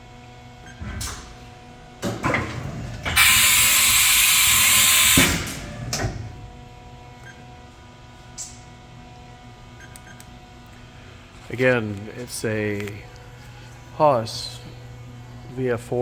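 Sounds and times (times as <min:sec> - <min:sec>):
mechanical clunks and clatter: 0:00.6 - 0:01.4, 0:02.0 - 0:03.6, 0:05.0 - 0:06.6
loud hiss of air: 0:03.2 - 0:05.5.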